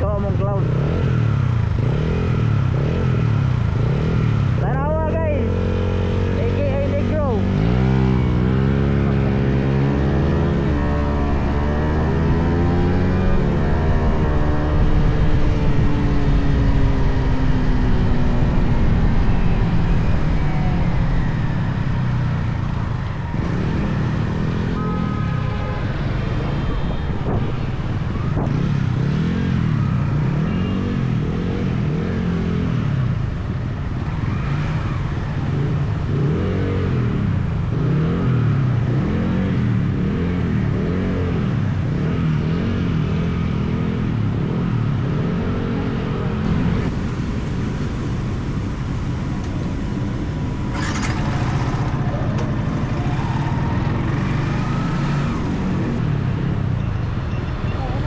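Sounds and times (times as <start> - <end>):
motorcycle engine accelerating: 5.4 - 22.0, 46.3 - 56.0.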